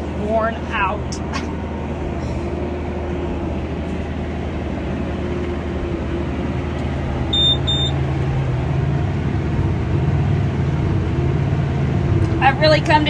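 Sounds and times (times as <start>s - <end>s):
steady humming tone: 0.0s - 13.0s
tractor engine drone: 0.0s - 13.0s
short high electronic beeps: 7.3s - 8.0s.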